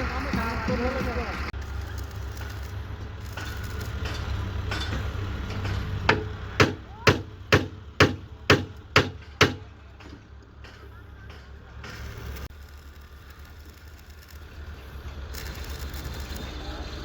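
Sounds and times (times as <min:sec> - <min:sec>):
low mechanical rumble: 0:00.0 - 0:11.0, 0:11.9 - 0:17.0.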